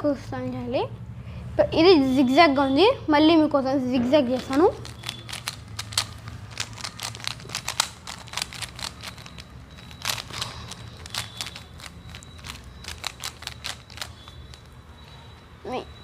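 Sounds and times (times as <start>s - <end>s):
puzzle cube twisting clicks: 4.4s - 14.8s.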